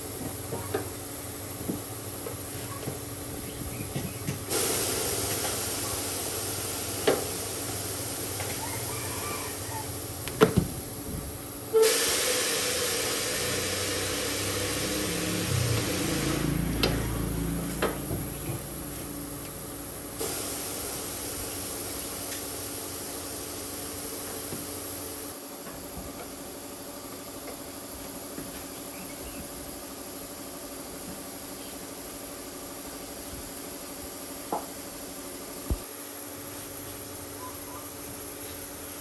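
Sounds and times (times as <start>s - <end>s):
compressed air hissing: 4.3s - 8.9s, 11.0s - 17.4s, 20.2s - 25.2s.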